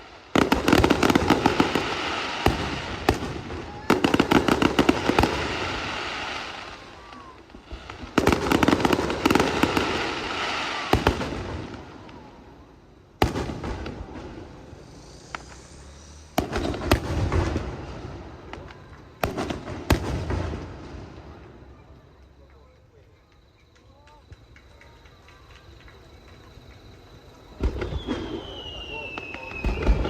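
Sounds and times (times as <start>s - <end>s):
fireworks bursting: 0.0s - 30.0s.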